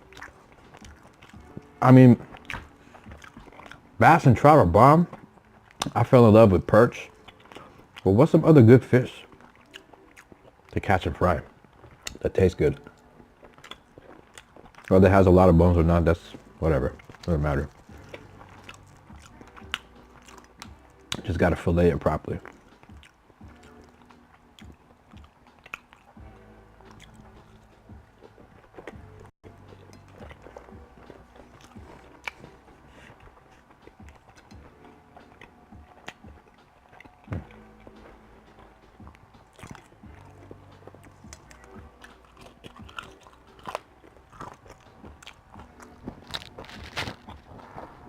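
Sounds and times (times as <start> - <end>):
person chewing food: 0.0 - 4.0, 5.1 - 6.0, 7.1 - 8.0, 9.2 - 10.8, 11.5 - 12.2, 12.8 - 15.0, 16.3 - 21.3, 22.4 - 48.0
faint background music: 0.0 - 48.0
wet mouth clicks: 2.4 - 3.8, 12.0 - 12.2, 13.5 - 14.9, 24.6 - 26.2, 35.2 - 38.0, 39.5 - 47.6.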